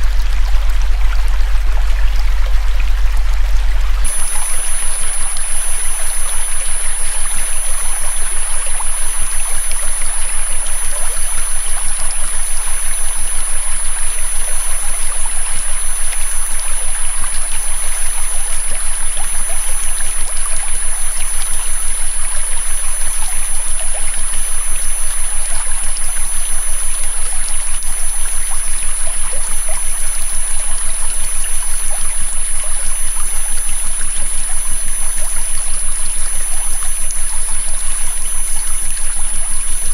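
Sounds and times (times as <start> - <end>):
high-pitched electronic tones: 0.0 - 16.9
faint low hum: 0.0 - 39.9
flowing river water: 0.0 - 39.9.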